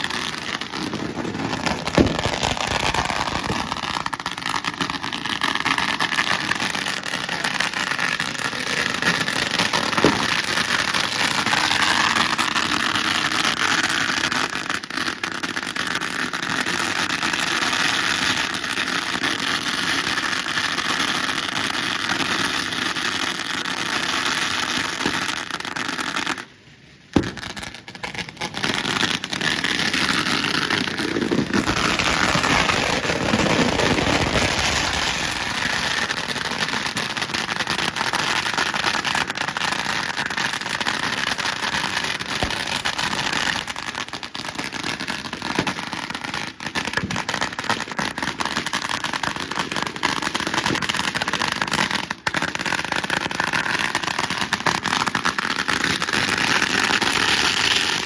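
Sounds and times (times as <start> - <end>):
firecrackers crackling: 0.0 - 58.0
sharp loud bang: 1.9 - 2.5.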